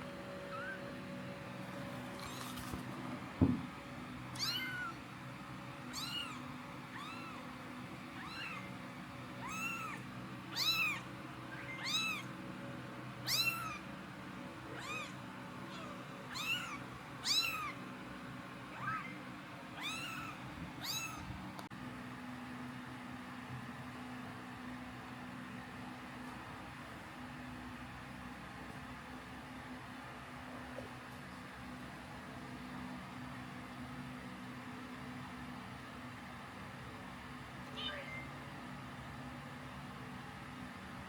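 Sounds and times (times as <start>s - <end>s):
low steady hum: 0.0s - 41.0s
kitten mewing: 0.5s - 0.8s, 4.4s - 5.0s, 5.9s - 7.6s, 8.2s - 8.8s, 9.4s - 12.3s, 13.2s - 13.8s, 14.7s - 17.8s, 18.7s - 19.2s, 19.8s - 21.3s, 37.7s - 38.3s.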